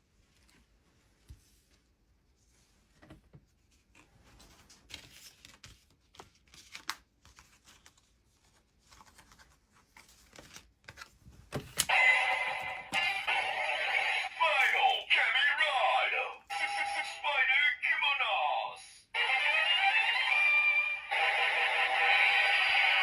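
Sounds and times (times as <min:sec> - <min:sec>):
toy electronic sound effect: 0:11.9 - 0:17.5, 0:18.8 - 0:23.0.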